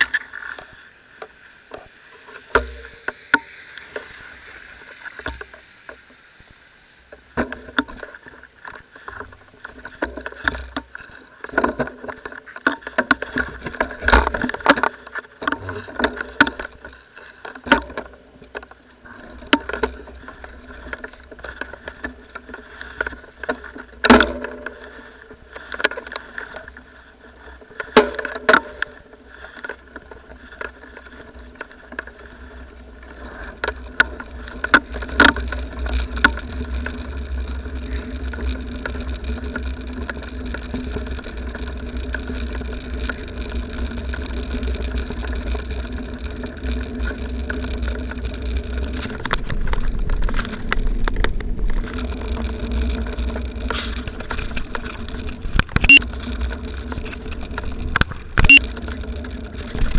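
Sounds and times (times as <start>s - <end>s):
vehicle engine running: 31.3s - 59.9s.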